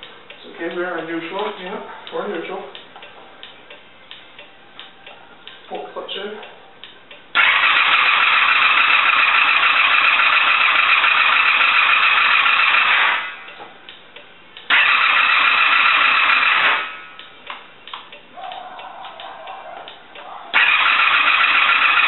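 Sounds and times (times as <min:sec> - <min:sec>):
engine cranking on electric starter: 0:07.4 - 0:13.4, 0:14.7 - 0:17.0, 0:20.5 - 0:22.0.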